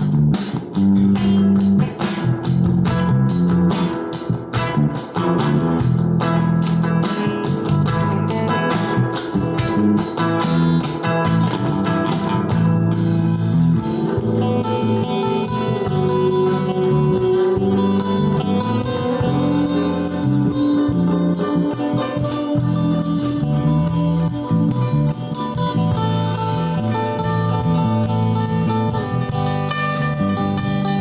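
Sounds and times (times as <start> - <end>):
guitar music through loudspeaker: 0.0 - 31.0.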